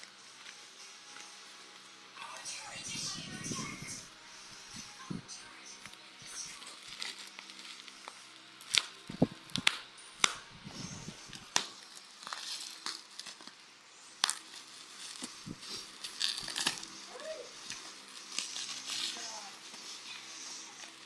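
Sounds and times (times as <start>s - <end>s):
packaging crinkling: 5.8s - 21.0s.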